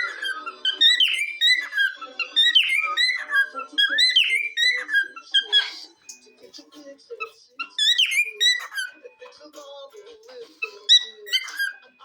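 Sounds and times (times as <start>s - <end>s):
cockatiel whistling: 0.0s - 5.9s, 7.2s - 9.0s, 10.6s - 11.9s.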